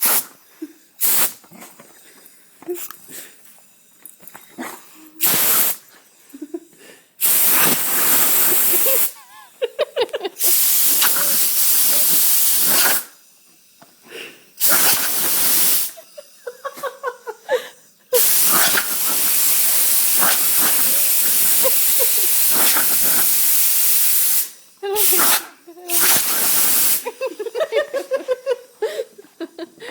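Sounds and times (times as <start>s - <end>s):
compressed air hissing: 0.0s - 0.4s, 1.0s - 1.4s, 5.0s - 5.9s, 7.1s - 9.3s, 10.4s - 17.1s, 17.9s - 27.4s.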